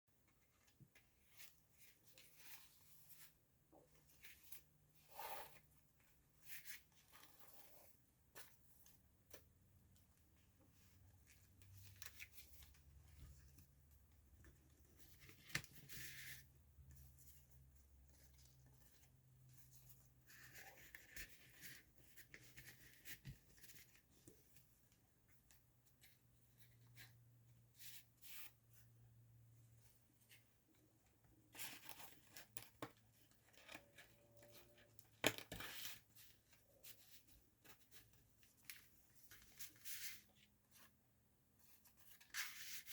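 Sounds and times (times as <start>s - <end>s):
paper pages rustling: 31.5s - 41.0s, 41.6s - 42.9s.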